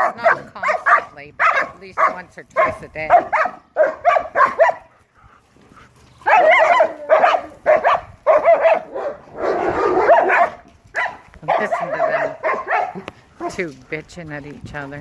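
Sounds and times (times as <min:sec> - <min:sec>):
dog drawn-out call: 0:00.0 - 0:04.9, 0:06.2 - 0:13.6
dogs barking and yapping: 0:00.0 - 0:14.1.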